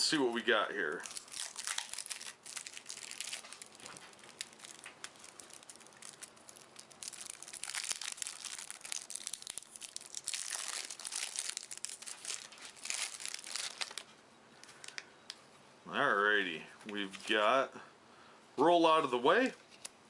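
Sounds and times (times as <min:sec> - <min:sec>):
plastic wrapping crinkling and tearing: 0:00.8 - 0:15.0.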